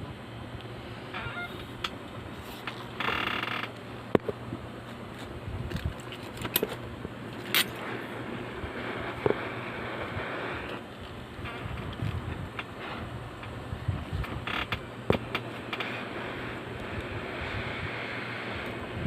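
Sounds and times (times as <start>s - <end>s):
faint hiss of hot air: 7.8s - 10.8s, 15.8s - 19.0s.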